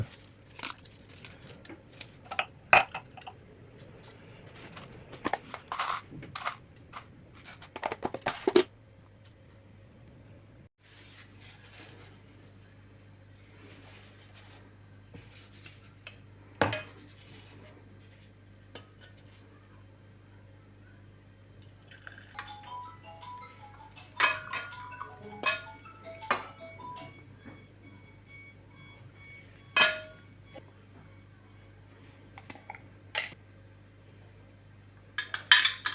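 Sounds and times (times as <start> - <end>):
soft background music: 22.3 - 30.4
kitchen utensils knocking and clinking: 24.2 - 26.7, 29.8 - 30.2, 35.2 - 35.9.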